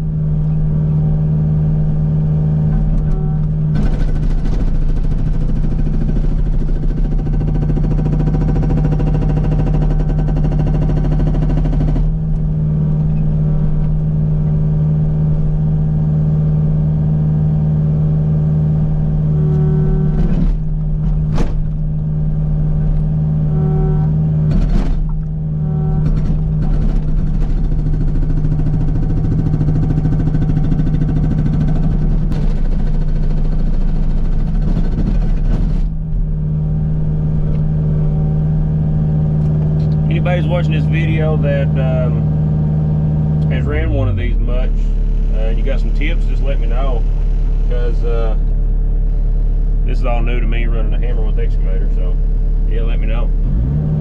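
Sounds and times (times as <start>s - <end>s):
excavator diesel engine running: 0.0s - 54.0s
dense rapid rattle: 2.6s - 14.2s, 19.3s - 36.2s, 39.4s - 42.3s, 43.4s - 53.3s
sharp clunks: 20.1s - 22.0s.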